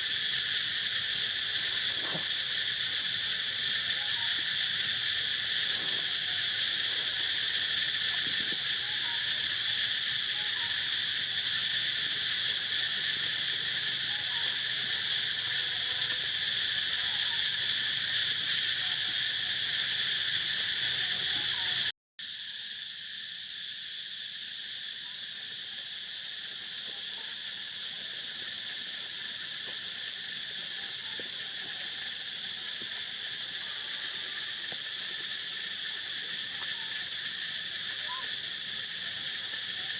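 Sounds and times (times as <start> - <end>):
insect chorus drone: 0.0 - 39.9.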